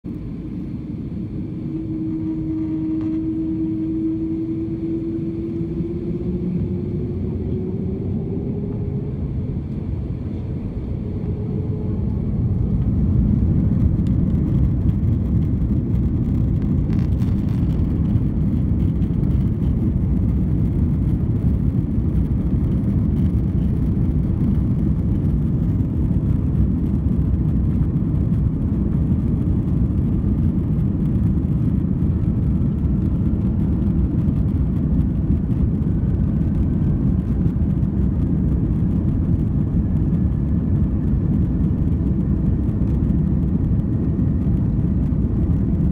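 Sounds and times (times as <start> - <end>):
jet engines spooling up: 0.2 - 19.7.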